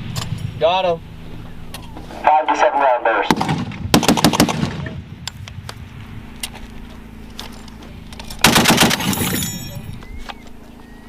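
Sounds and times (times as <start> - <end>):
steady low hum: 0.0 - 11.0
machine gun burst: 3.4 - 4.8, 8.4 - 9.6.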